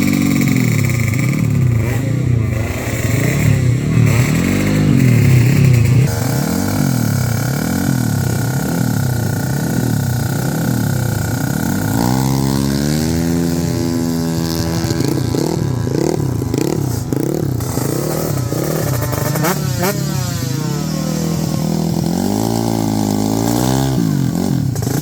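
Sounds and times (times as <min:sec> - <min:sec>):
motorcycle engine revving: 0:00.0 - 0:25.0.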